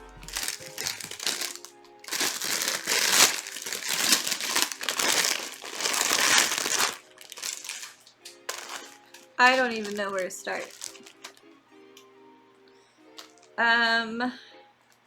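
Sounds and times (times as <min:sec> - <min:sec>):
packaging crinkling and rustling: 0:00.0 - 0:11.5
soft background music: 0:00.0 - 0:15.0.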